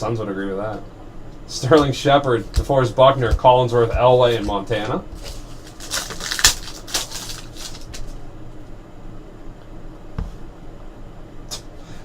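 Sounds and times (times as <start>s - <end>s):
cards handled: 5.2s - 8.1s
foil pack tearing and crinkling: 5.2s - 8.2s.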